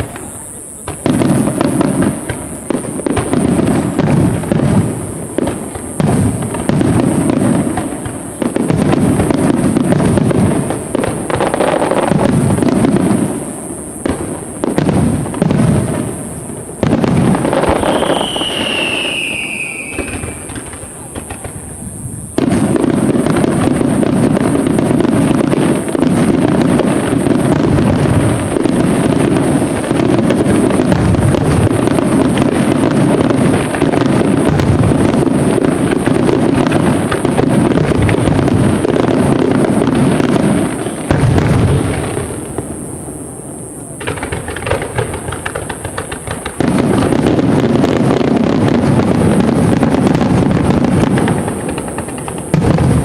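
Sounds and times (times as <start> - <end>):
fireworks booming: 0.0 - 53.0
fireworks crackling: 0.0 - 53.0
firework whistle falling: 16.8 - 24.8.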